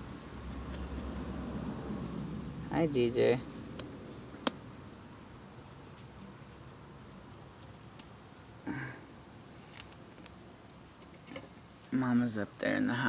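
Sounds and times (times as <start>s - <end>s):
faint outdoor ambience: 0.0s - 13.0s
high insect chirps: 1.8s - 2.1s, 5.2s - 11.6s.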